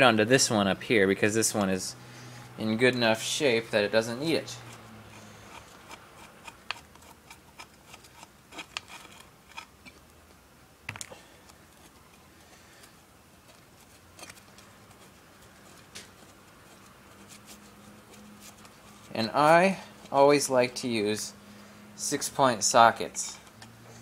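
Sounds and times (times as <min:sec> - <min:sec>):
hand tools clicking and tapping metal: 0:04.5 - 0:10.0.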